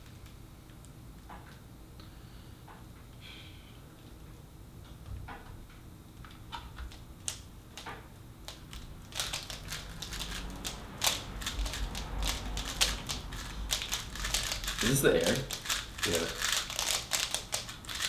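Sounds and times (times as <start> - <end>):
plastic cube layers clacking: 8.5 - 18.0.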